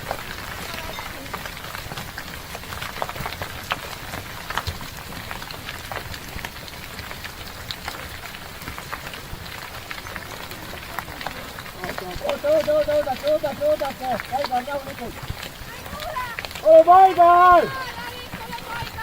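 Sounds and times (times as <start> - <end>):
steady rushing noise: 10.5 - 19.0.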